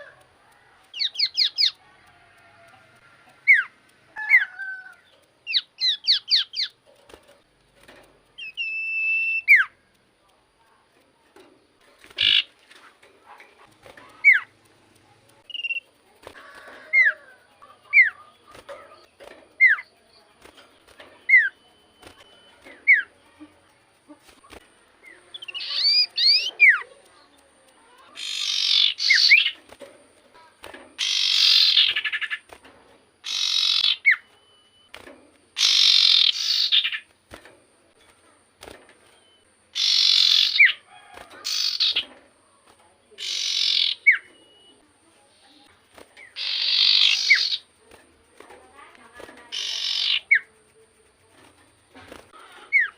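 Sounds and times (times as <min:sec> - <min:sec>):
bird harsh chattering: 0:00.9 - 0:01.8, 0:05.4 - 0:06.8, 0:08.4 - 0:09.8, 0:12.0 - 0:12.6, 0:13.6 - 0:14.6, 0:15.4 - 0:20.0, 0:24.2 - 0:29.7, 0:30.9 - 0:32.6, 0:33.2 - 0:34.3, 0:35.6 - 0:37.1, 0:39.7 - 0:42.1, 0:43.2 - 0:44.3, 0:46.2 - 0:47.8, 0:49.4 - 0:50.7, 0:52.2 - 0:52.9
bird whistling: 0:08.4 - 0:09.7, 0:25.3 - 0:26.8, 0:33.2 - 0:34.9, 0:35.6 - 0:37.0, 0:39.2 - 0:40.8, 0:43.2 - 0:44.8, 0:46.2 - 0:47.6, 0:49.6 - 0:50.4.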